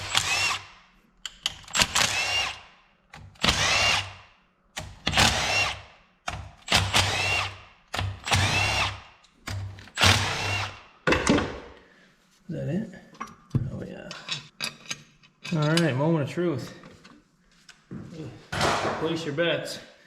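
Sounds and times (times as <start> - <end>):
cordless drill spinning: 0.0 - 0.8, 1.7 - 2.8, 3.4 - 4.2, 5.1 - 5.9, 6.7 - 7.6, 8.2 - 9.1, 9.9 - 10.9.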